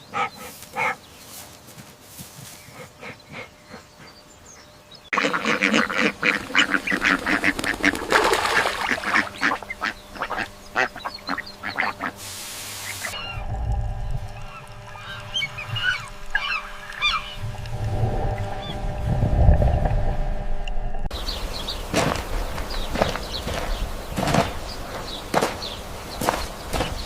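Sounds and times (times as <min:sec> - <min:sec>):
waterfowl honking and quacking: 0:05.1 - 0:12.2, 0:14.4 - 0:17.4
low rumble: 0:13.2 - 0:25.4.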